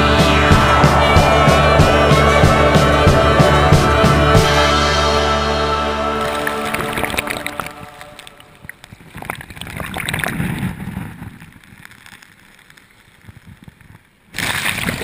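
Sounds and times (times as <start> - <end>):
sea waves washing: 0.0 - 9.1.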